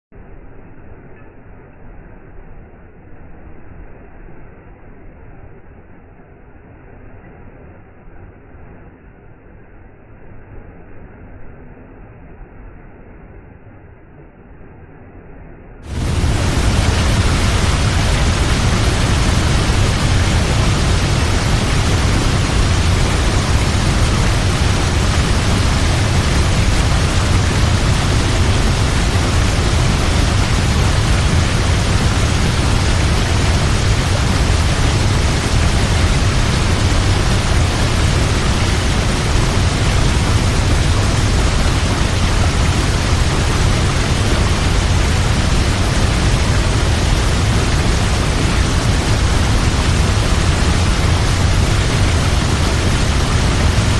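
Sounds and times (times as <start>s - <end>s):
low rumble of falling water: 0.0s - 53.9s
waterfall rushing: 15.9s - 53.9s.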